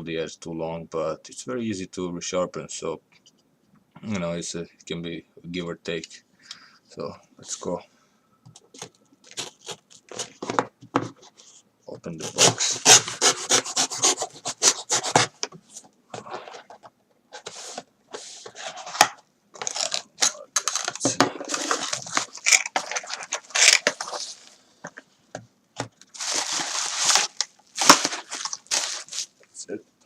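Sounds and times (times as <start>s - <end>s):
cardboard packaging scraping and tearing: 8.8s - 10.6s, 12.2s - 15.4s, 17.4s - 24.5s, 26.1s - 29.3s.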